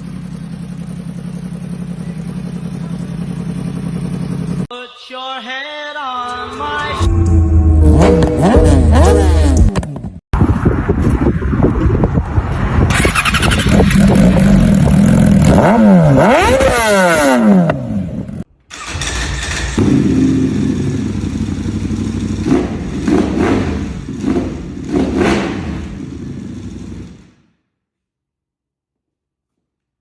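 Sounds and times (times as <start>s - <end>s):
motorcycle engine revving: 0.0s - 4.7s, 7.4s - 10.2s, 12.9s - 27.4s
motorcycle idling with throttle blips: 0.0s - 4.7s, 18.8s - 24.9s.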